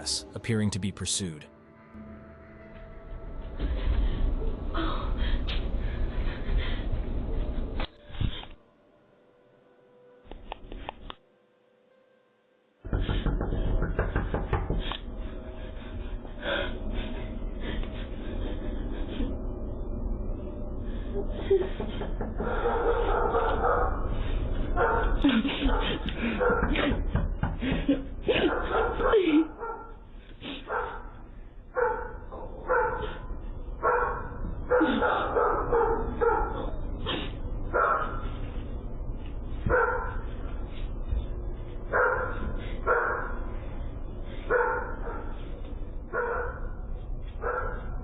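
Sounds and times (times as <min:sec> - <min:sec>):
steady low rumble: 0:00.0 - 0:08.6, 0:14.8 - 0:26.9, 0:27.8 - 0:48.0
woman breathing hard and gasping: 0:03.6 - 0:08.6, 0:14.8 - 0:19.9
sharp knocks: 0:12.9 - 0:15.0
dog barking: 0:22.4 - 0:24.0, 0:24.8 - 0:26.7, 0:28.4 - 0:30.0, 0:30.6 - 0:33.2, 0:33.8 - 0:36.8, 0:37.7 - 0:38.3, 0:39.7 - 0:40.2, 0:41.9 - 0:43.4, 0:44.5 - 0:45.4, 0:46.1 - 0:46.8, 0:47.4 - 0:47.9.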